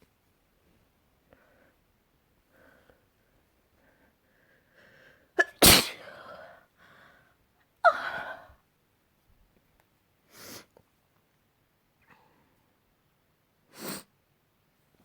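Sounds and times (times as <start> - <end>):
quiet breaths: 0.0 - 5.4, 6.0 - 8.7, 10.2 - 11.1, 11.9 - 14.2
person sneezing: 5.4 - 6.3.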